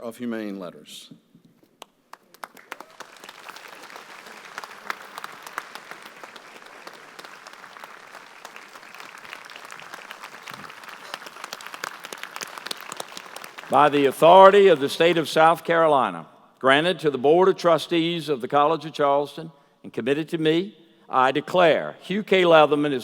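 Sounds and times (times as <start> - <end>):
audience applause: 2.1 - 15.6.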